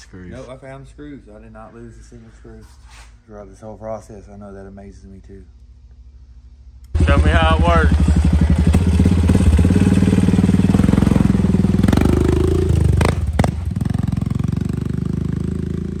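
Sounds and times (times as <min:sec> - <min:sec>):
atv engine revving: 0:06.9 - 0:16.0.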